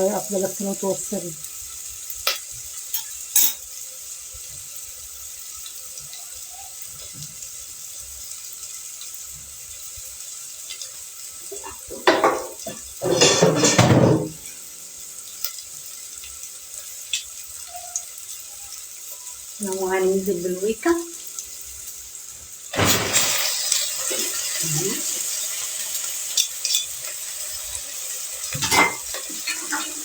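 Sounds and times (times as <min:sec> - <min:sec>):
onion sizzling in a pan: 0:00.0 - 0:30.0
water running from a tap: 0:00.0 - 0:30.0.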